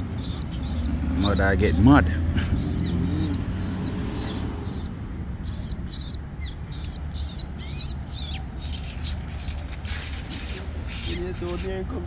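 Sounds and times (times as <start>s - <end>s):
bird chirping: 0.0s - 11.8s.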